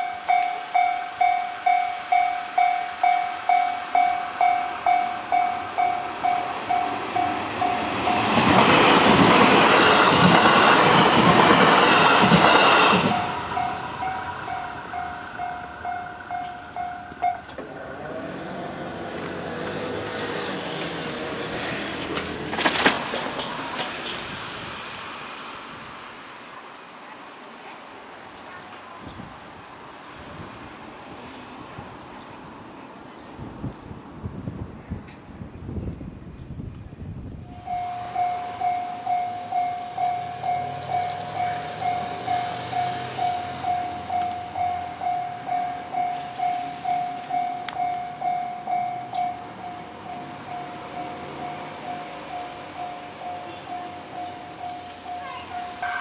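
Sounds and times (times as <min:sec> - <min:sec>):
level crossing warning bell: 0:00.0 - 0:18.5, 0:37.5 - 0:56.0
vehicle driving past: 0:17.6 - 0:22.9.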